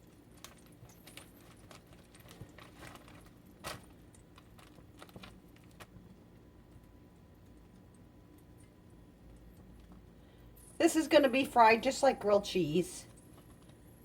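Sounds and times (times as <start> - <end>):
light clicks and rustles: 0.0 - 6.2.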